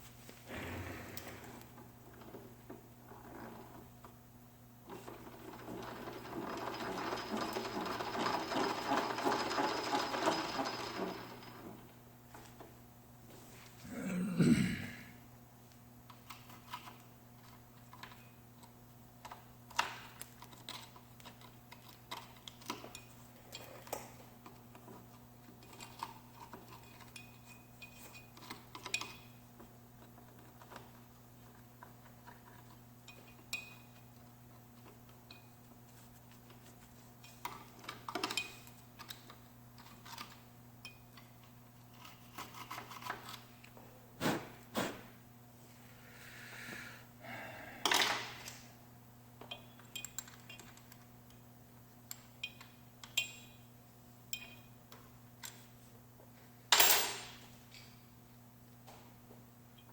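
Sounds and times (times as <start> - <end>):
steady low hum: 12.8 - 15.8.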